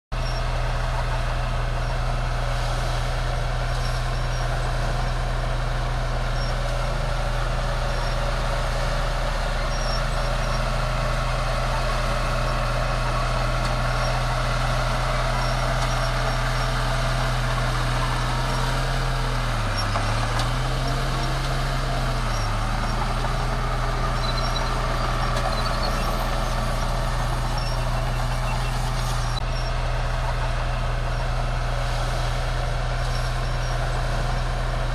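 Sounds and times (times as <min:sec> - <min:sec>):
bulldozer diesel engine running: 0:00.1 - 0:34.9.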